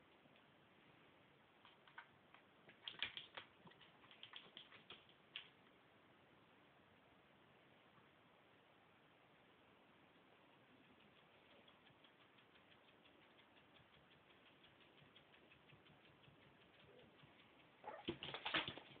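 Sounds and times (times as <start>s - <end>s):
kitten clicking: 1.6s - 5.6s, 10.5s - 19.0s.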